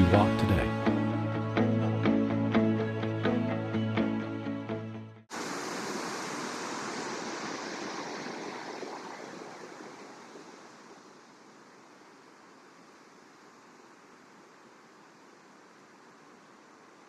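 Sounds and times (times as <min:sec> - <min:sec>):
music track: 0:00.0 - 0:04.8
waterfall rushing: 0:05.3 - 0:14.3.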